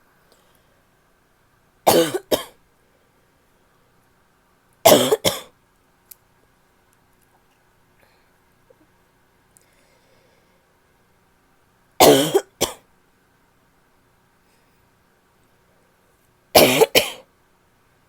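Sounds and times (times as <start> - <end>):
woman coughing: 1.9 - 2.6, 4.9 - 5.5, 12.0 - 12.8, 16.6 - 17.2.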